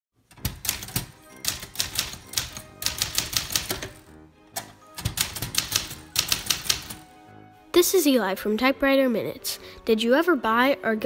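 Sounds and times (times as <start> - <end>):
background music: 0.2 - 11.0
manual typewriter typing: 0.3 - 4.1, 5.0 - 7.0.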